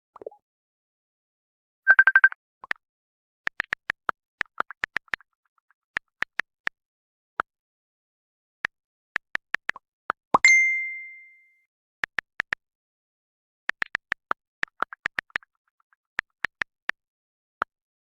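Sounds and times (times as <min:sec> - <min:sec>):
short digital clicks: 0:10.4 - 0:11.4.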